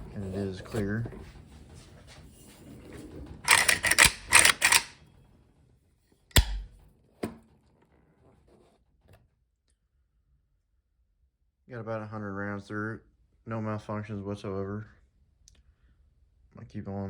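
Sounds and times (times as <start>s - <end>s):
bolt slamming clack: 3.5s - 4.9s, 6.3s - 6.8s
rifle action clicks and clatter: 3.5s - 5.0s, 6.3s - 6.8s
light metal click: 6.3s - 6.7s.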